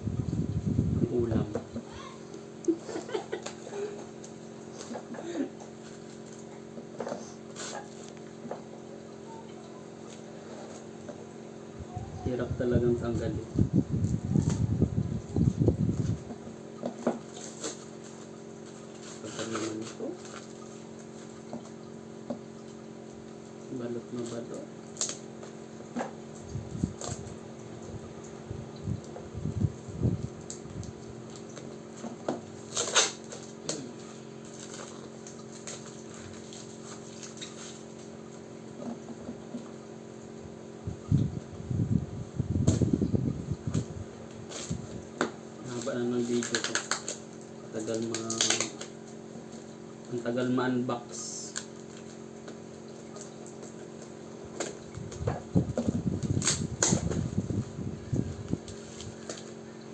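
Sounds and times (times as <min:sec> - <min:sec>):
steady low hum: 0:00.0 - 0:59.9
taped packaging rustling: 0:17.2 - 0:20.9, 0:32.5 - 0:38.1, 0:45.6 - 0:49.0
packaging ripping: 0:32.6 - 0:33.8, 0:45.7 - 0:47.2, 0:47.8 - 0:48.9, 0:56.2 - 0:57.1.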